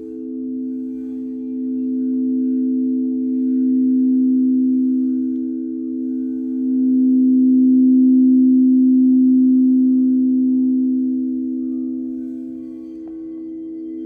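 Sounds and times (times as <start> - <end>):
singing bowl ringing: 0.0 - 14.0.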